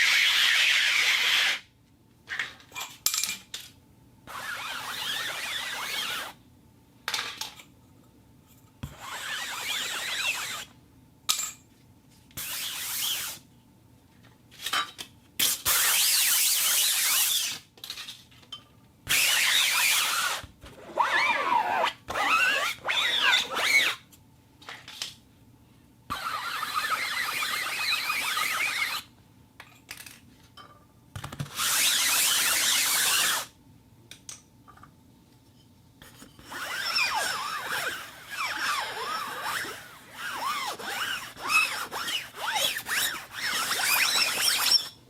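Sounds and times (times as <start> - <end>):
fabric rubbing and rustling: 4.3 - 6.4, 8.9 - 10.7, 36.1 - 44.9.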